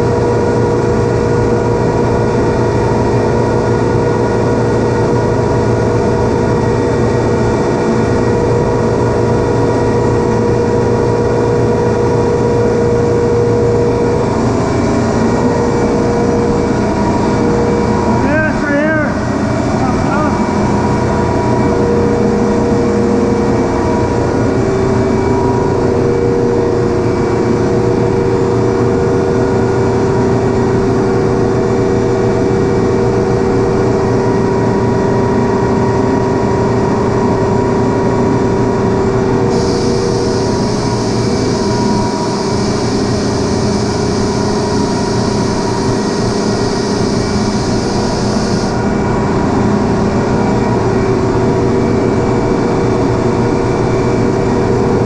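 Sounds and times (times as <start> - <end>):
refrigeration machinery humming: 0.0 - 55.0
high hiss: 39.5 - 48.8.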